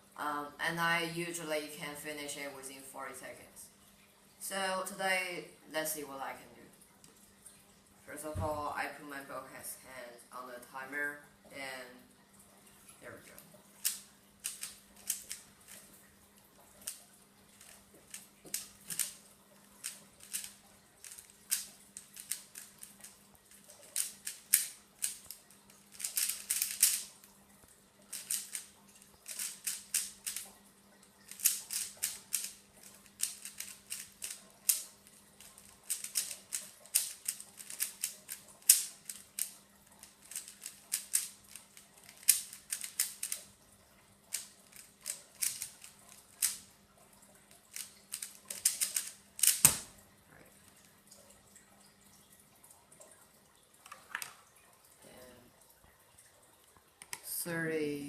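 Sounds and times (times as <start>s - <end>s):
puzzle cube plastic clicking: 13.8s - 15.9s, 17.6s - 27.2s, 28.1s - 30.5s, 31.3s - 43.5s, 44.3s - 46.7s, 47.6s - 49.9s.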